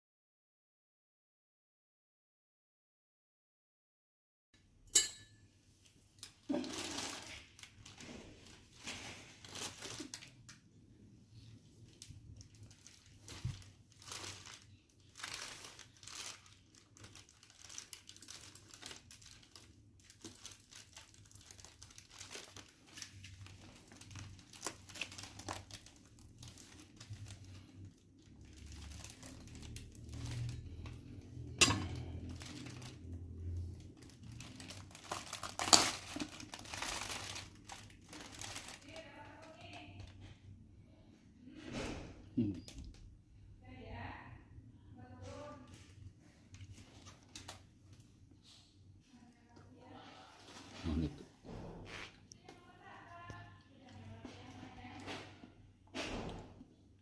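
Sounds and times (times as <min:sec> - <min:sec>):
packaging crinkling: 0:06.2 - 0:10.6, 0:11.8 - 0:40.2, 0:46.8 - 0:48.0
packaging ripping: 0:06.5 - 0:10.5, 0:11.9 - 0:30.8, 0:31.9 - 0:33.1, 0:33.8 - 0:39.0.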